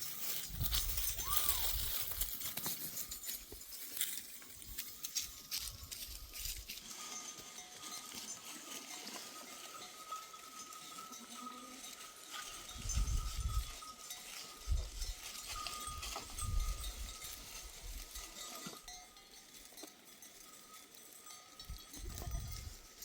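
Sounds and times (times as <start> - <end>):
livestock bells clinking: 0.0 - 23.0.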